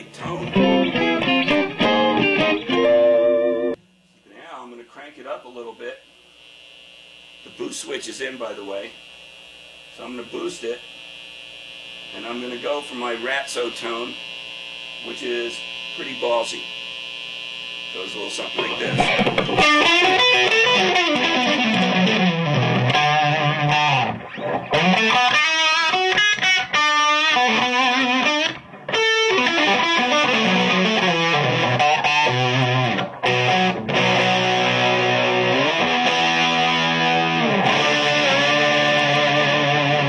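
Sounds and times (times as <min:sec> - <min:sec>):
overdriven electric guitar: 0:00.0 - 0:03.8, 0:18.5 - 0:40.0.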